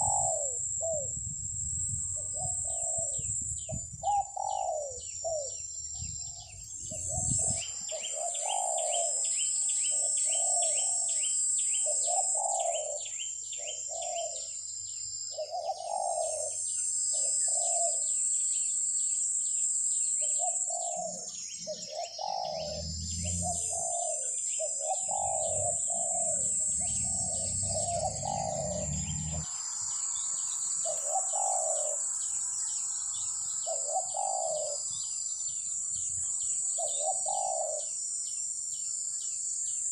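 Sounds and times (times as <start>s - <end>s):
doves cooing: 0.0s - 1.2s, 2.1s - 3.4s, 4.0s - 11.2s, 11.8s - 14.6s, 15.3s - 18.1s, 20.2s - 29.6s, 30.4s - 32.3s, 33.1s - 35.1s, 36.6s - 38.0s
insects ticking rapidly: 24.8s - 39.6s
high-pitched drone: 25.1s - 32.0s.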